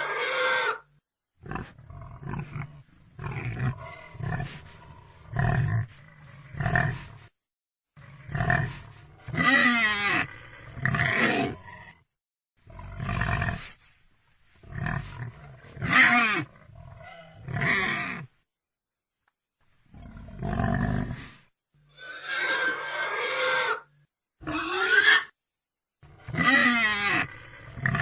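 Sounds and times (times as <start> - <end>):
pig calls: 0.0 - 0.9, 8.2 - 11.6, 14.8 - 18.3, 21.9 - 25.3, 26.2 - 28.0.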